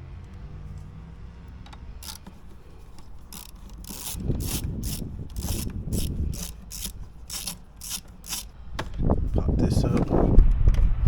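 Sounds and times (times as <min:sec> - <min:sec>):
hand tool clicking and rattling: 0:02.0 - 0:08.6.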